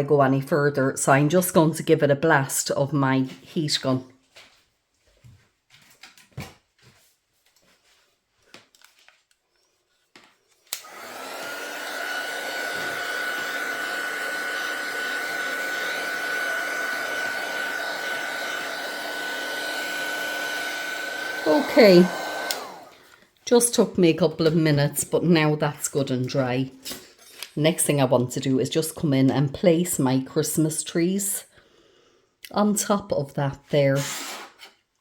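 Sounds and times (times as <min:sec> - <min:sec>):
heat gun fan whine: 0:10.7 - 0:22.9
heat gun switch click: 0:22.4 - 0:22.7.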